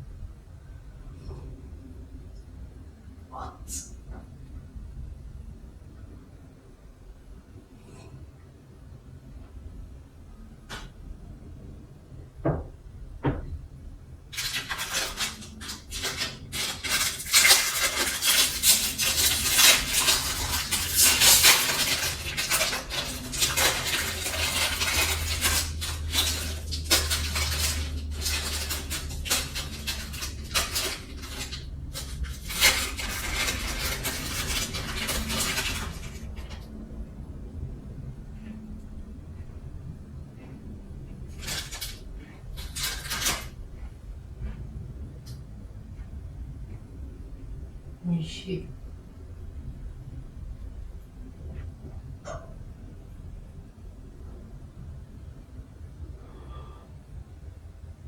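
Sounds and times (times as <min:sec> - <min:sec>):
knocks: 0:12.4 - 0:13.6.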